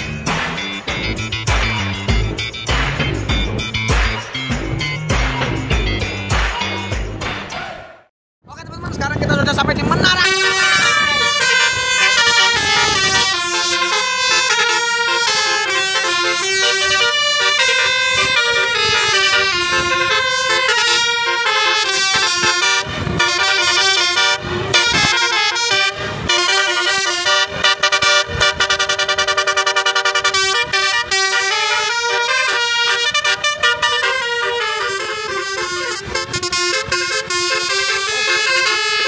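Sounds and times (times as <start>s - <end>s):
multi-note bus air horns: 10.1s - 39.0s.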